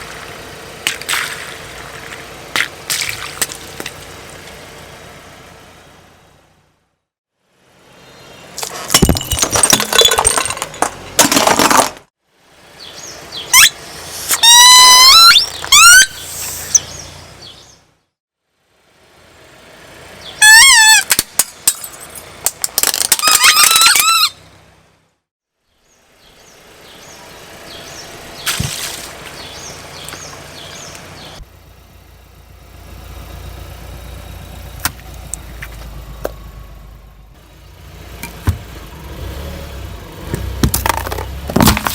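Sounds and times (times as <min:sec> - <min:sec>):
car engine running quietly: 0:00.0 - 0:06.9, 0:12.5 - 0:18.0, 0:18.7 - 0:21.1, 0:25.7 - 0:41.9
object crunching under car tyre: 0:08.6 - 0:12.1, 0:28.4 - 0:31.1, 0:40.3 - 0:41.9
high wavering squeals: 0:13.4 - 0:17.0, 0:20.3 - 0:21.1, 0:23.1 - 0:24.4.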